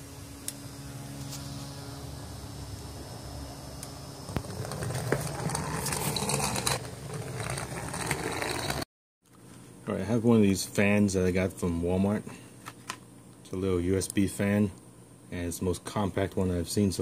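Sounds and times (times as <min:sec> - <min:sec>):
small fan motor buzzing: 0:00.0 - 0:08.8.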